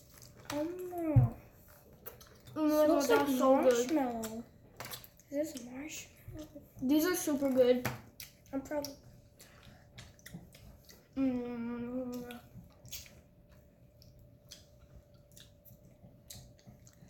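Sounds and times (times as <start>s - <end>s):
chewing mouth noises: 8.2s - 11.2s, 12.0s - 17.0s.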